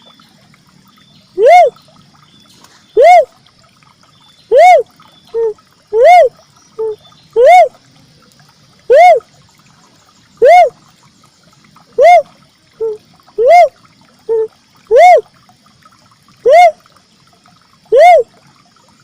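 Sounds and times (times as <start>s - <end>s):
cuckoo-dove cooing: 1.4s - 1.8s, 3.0s - 3.3s, 4.5s - 7.7s, 8.9s - 9.2s, 10.4s - 10.8s, 11.9s - 15.3s, 16.4s - 16.8s, 17.9s - 18.3s.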